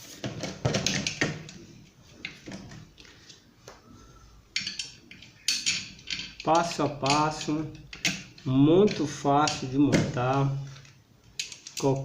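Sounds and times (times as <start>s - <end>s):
fan blade clicking and knocking: 4.6s - 10.5s.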